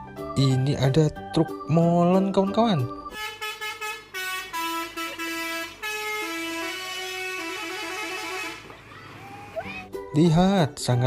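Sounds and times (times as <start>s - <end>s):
toy electronic horn tune: 3.1s - 8.7s.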